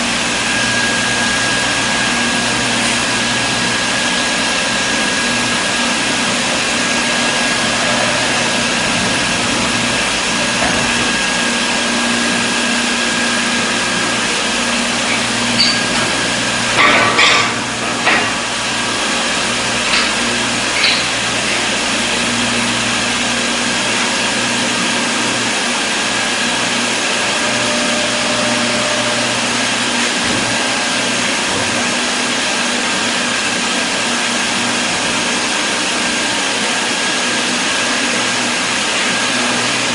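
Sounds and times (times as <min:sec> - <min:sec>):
brazing machine whirring: 0:00.0 - 0:32.0
sharp clicks and knocks: 0:19.9 - 0:21.2.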